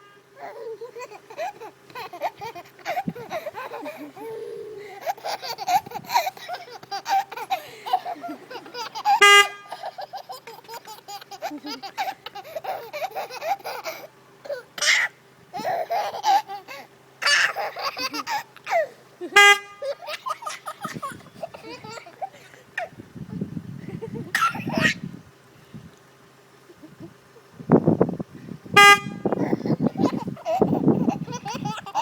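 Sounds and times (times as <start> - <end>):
car horn honking: 0.0 - 0.4, 9.0 - 10.0, 19.3 - 20.0, 28.7 - 29.4
baby laughing: 0.4 - 23.0, 24.1 - 25.0, 29.2 - 32.0.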